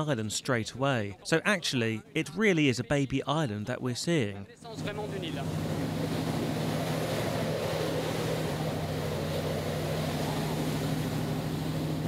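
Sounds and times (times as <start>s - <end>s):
engine droning: 4.8s - 12.0s.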